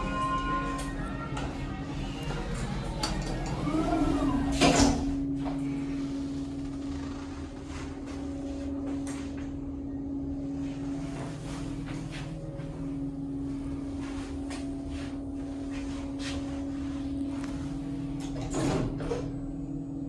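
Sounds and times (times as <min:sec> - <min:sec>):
lift doors sliding shut: 0:00.0 - 0:05.2
lift car humming: 0:00.0 - 0:20.0.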